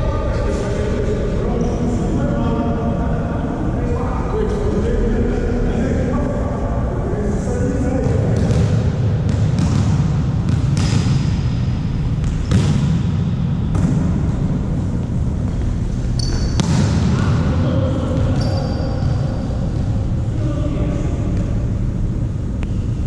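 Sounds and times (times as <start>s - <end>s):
low hall room noise: 0.0s - 23.0s
sneaker squeaks: 1.5s - 2.0s, 15.4s - 17.3s, 18.0s - 19.8s, 22.6s - 23.0s
volleyball struck and bouncing: 8.4s - 14.3s, 16.2s - 17.5s.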